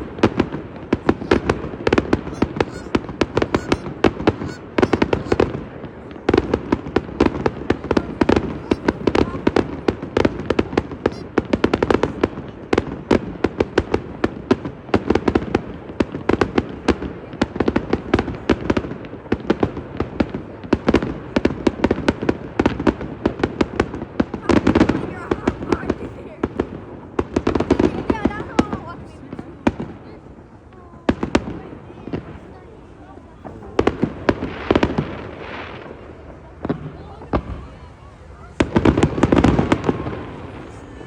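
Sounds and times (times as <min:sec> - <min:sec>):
fireworks cracks and bangs: 0:00.0 - 0:30.5, 0:31.1 - 0:32.5, 0:33.4 - 0:37.8, 0:38.6 - 0:41.0.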